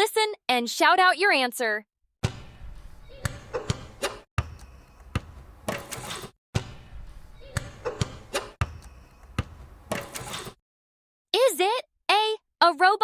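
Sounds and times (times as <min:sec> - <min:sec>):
basketball bouncing: 0:02.2 - 0:10.5.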